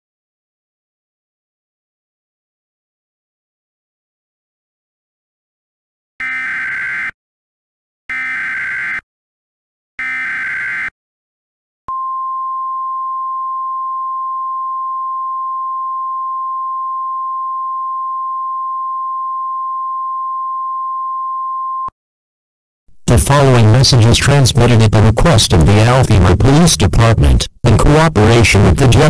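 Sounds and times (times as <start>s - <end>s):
steady high warning tone: 6.2s - 7.2s
buzzing digital data bursts: 10.0s - 10.9s.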